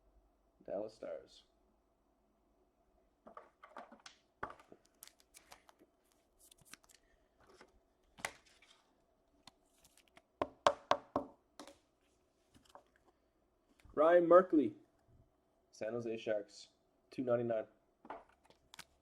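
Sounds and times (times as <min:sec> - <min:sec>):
cards clicking and rustling: 0:03.4 - 0:08.9, 0:09.5 - 0:10.3, 0:18.2 - 0:19.0.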